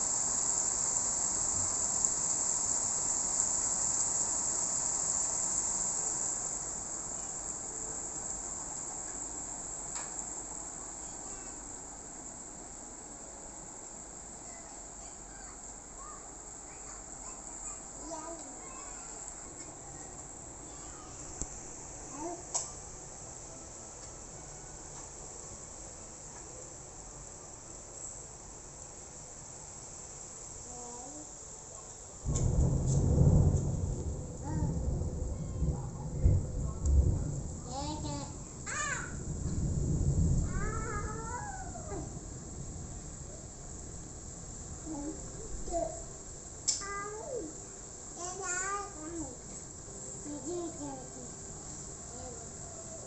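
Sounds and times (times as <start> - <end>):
crickets trilling: 0.0 - 53.0
high-pitched insect chorus: 0.0 - 53.0
rain hiss: 0.0 - 53.0.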